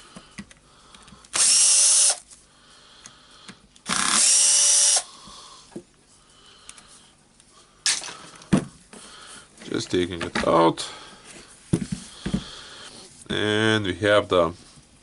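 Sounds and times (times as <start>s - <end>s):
power drill motor whining: 1.3s - 2.2s, 3.8s - 5.1s.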